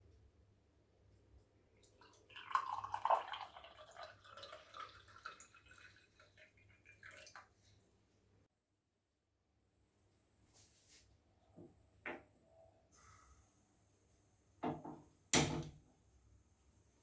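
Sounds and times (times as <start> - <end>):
water pouring into a pan: 1.8 - 7.7.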